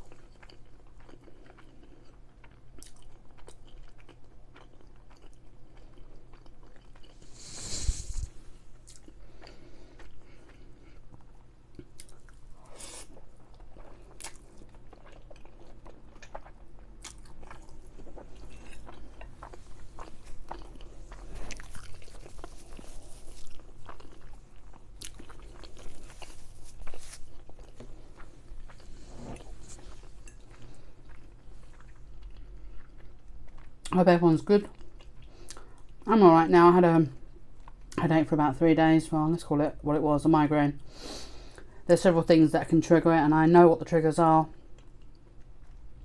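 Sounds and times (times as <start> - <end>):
person chewing food: 0.0 - 33.9, 34.7 - 36.1, 44.6 - 46.0.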